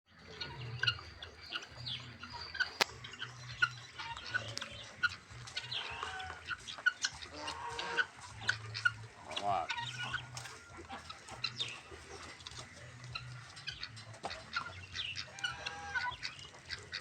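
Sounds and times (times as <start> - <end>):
chickens clucking: 0.1 - 17.0.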